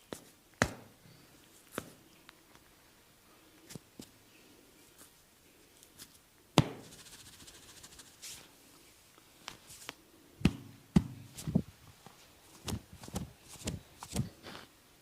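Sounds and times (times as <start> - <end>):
hands slapping head: 6.6 - 7.0.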